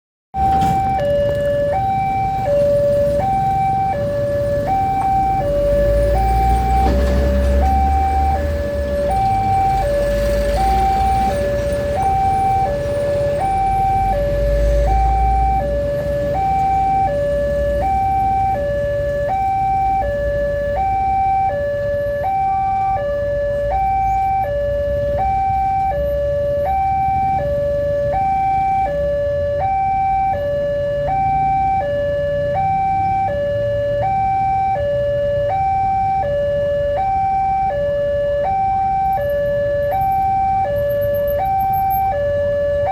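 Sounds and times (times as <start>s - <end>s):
level crossing alarm two-tone: 0.4s - 42.9s.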